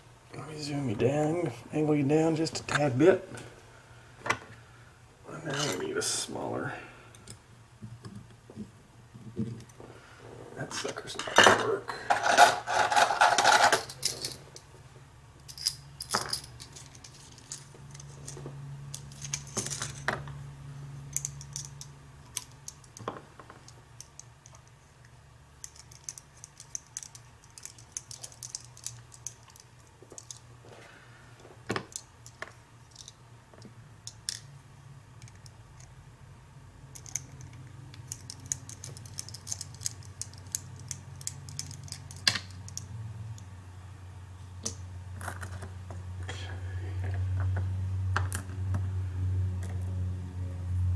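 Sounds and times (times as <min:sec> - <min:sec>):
padlock and tools clinking: 0:15.4 - 0:20.1, 0:21.1 - 0:24.8, 0:25.6 - 0:30.4, 0:36.9 - 0:42.9.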